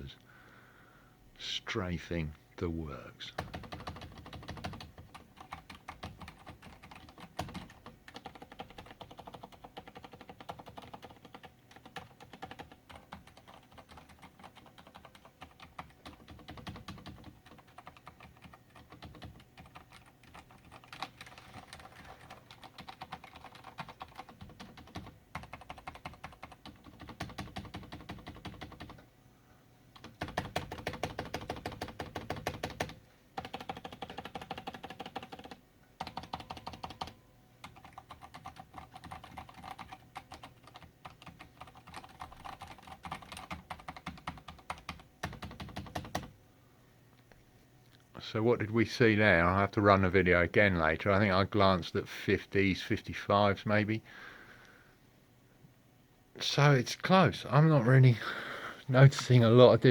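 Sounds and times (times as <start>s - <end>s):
mechanical keyboard typing: 3.4s - 29.0s, 30.0s - 46.3s.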